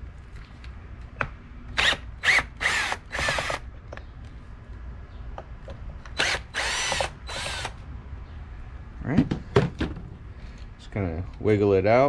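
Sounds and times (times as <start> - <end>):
cordless drill motor whirring: 1.8 - 3.6, 6.1 - 7.8.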